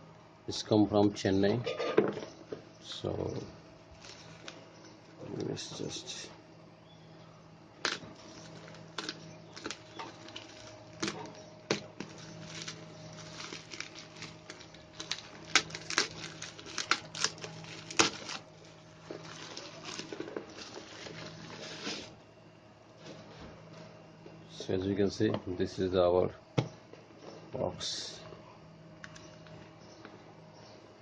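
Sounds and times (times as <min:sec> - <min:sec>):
faint steady hum: 0:00.0 - 0:31.0
packaging crinkling and rustling: 0:03.9 - 0:04.6, 0:07.8 - 0:22.2.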